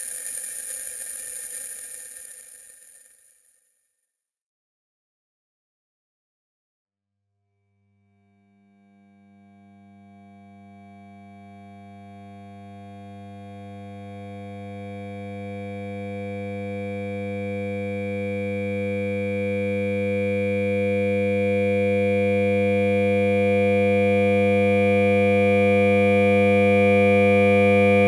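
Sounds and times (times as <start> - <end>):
synthesized drone: 0.0 - 3.4.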